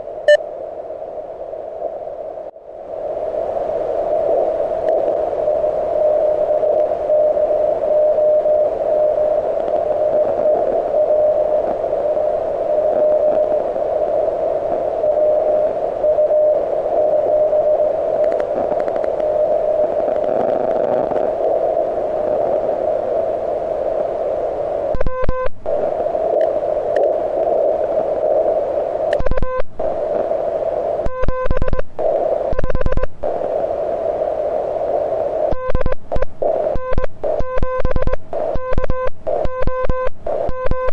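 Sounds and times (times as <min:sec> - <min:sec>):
morse sidetone keying: 0:25.0 - 0:25.6, 0:29.2 - 0:30.0, 0:31.1 - 0:33.4, 0:35.5 - 0:40.9
weak morse code signal: 0:25.0 - 0:26.0, 0:29.1 - 0:30.2, 0:31.0 - 0:33.6, 0:35.5 - 0:40.9
radio static hiss: 0:25.0 - 0:26.6, 0:27.6 - 0:40.9.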